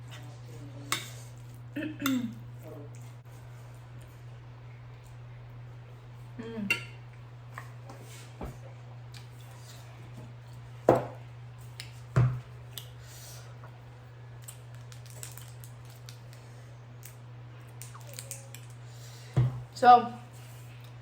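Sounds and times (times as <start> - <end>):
steady low hum: 0.0 - 21.0
wet chewing smacks: 17.7 - 18.8.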